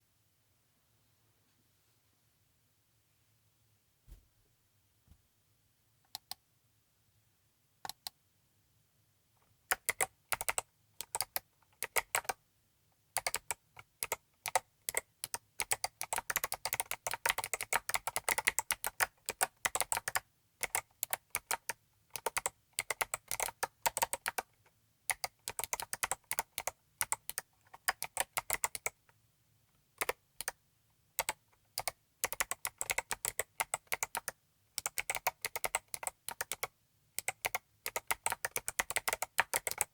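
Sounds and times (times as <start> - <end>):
clicky mechanical keyboard typing: 9.7 - 12.4, 13.2 - 24.5, 25.1 - 29.0, 31.2 - 39.9.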